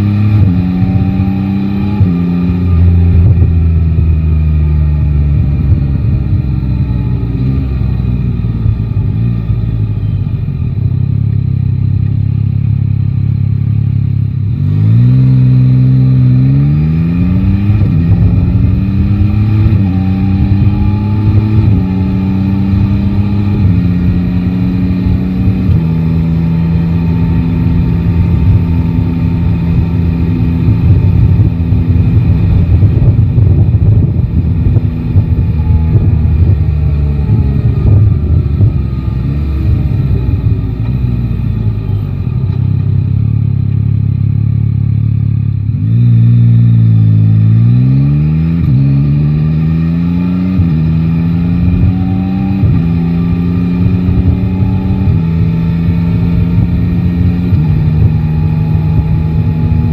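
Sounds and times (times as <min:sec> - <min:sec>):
motorcycle engine accelerating: 0:00.0 - 0:59.9
wind rush on microphone: 0:05.1 - 0:07.4, 0:17.0 - 0:42.7, 0:50.4 - 0:59.9.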